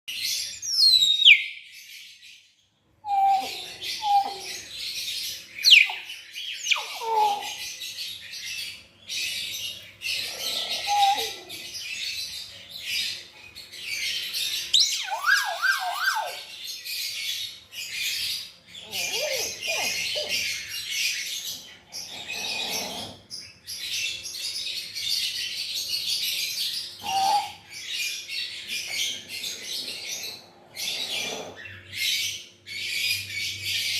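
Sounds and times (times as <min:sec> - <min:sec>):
high chirps chatter: 0:03.1 - 0:16.6, 0:18.4 - 0:23.1
myna whistles and squawks: 0:14.8 - 0:16.5, 0:27.0 - 0:27.6.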